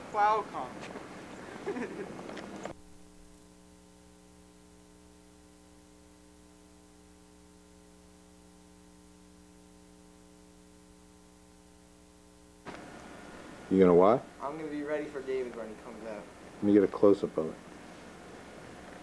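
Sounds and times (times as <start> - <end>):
steady electrical hum: 0.0 - 19.0
faint hiss: 12.6 - 19.0.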